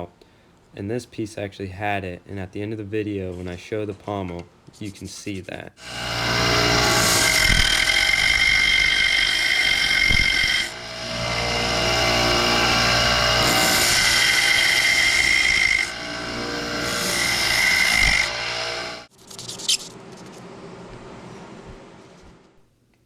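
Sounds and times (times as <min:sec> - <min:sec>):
drill press boring into metal: 0:05.8 - 0:19.0.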